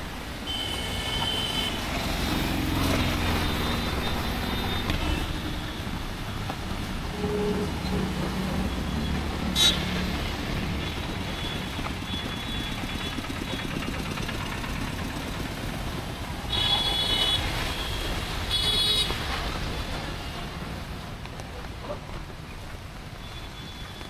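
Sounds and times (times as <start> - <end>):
vehicle horn: 0.5 - 1.9, 9.4 - 10.2, 16.5 - 19.3
vehicle engines rumbling past: 1.2 - 22.6.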